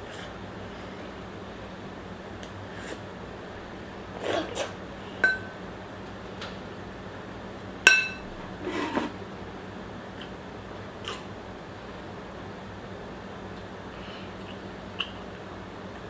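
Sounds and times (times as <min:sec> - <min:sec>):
utensils clinking against a dish: 0:05.2 - 0:05.6, 0:07.9 - 0:09.1
scraping and rustling: 0:08.4 - 0:09.2.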